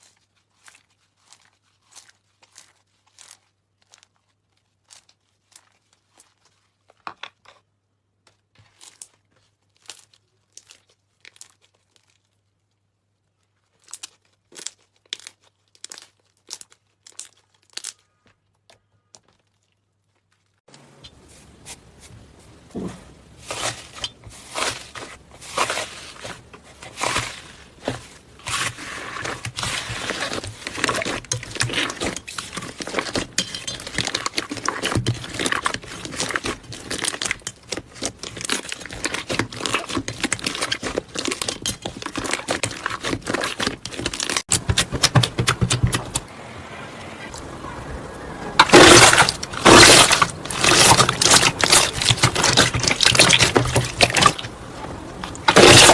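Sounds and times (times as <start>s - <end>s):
slime squishing and popping: 13.7s - 18.0s, 24.5s - 46.2s, 48.6s - 54.5s.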